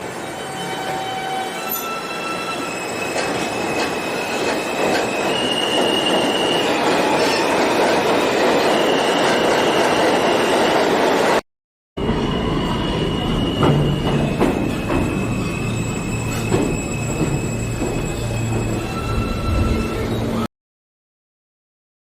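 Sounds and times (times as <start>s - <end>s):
subway train rumbling on rails: 0.0s - 11.4s, 12.0s - 20.5s
high-pitched squealing whines: 12.0s - 20.5s.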